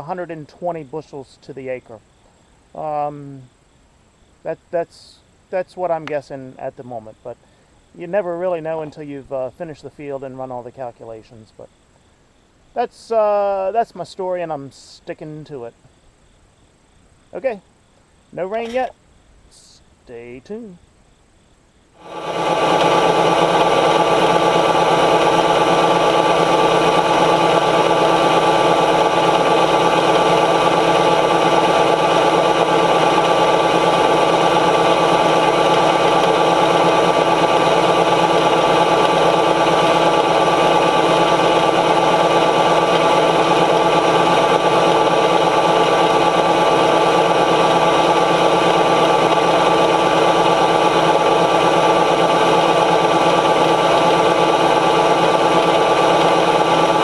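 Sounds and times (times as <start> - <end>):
combine harvester droning: 22.0 - 57.0.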